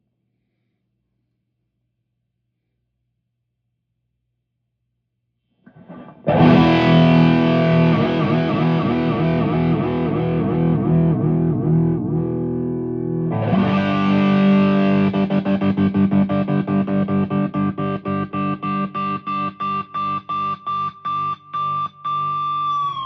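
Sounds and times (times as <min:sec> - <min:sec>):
distorted electric guitar: 0:05.7 - 0:23.0.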